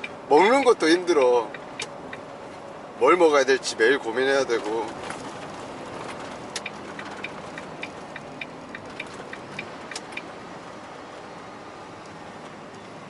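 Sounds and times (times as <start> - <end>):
light regular ticking: 0.0 - 0.2, 1.1 - 2.3, 4.8 - 10.4
road and engine noise in truck cab: 0.0 - 13.0.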